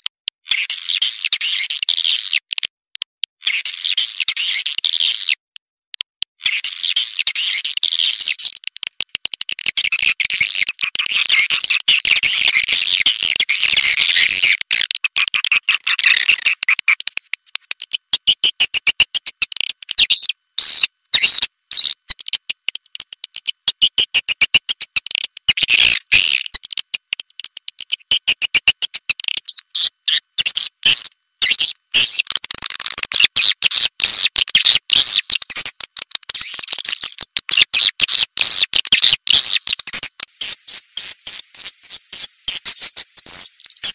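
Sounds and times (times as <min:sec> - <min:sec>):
swiftlets twittering: 0:34.3 - 0:43.9.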